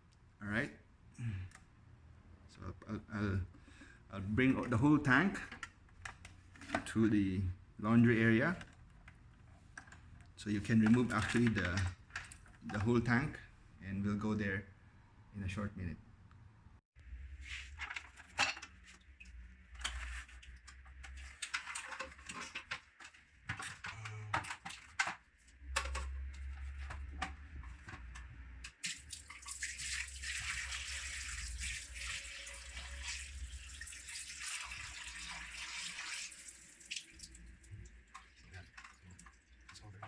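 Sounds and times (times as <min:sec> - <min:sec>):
water running and splashing: 0:28.8 - 0:39.8.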